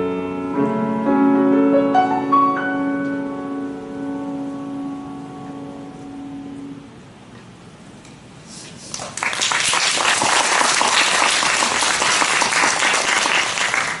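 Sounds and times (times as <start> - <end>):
audience applause: 8.9 - 14.0.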